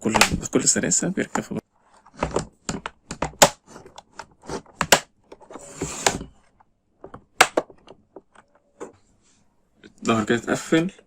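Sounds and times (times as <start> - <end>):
plastic scraping rub: 1.7 - 6.6.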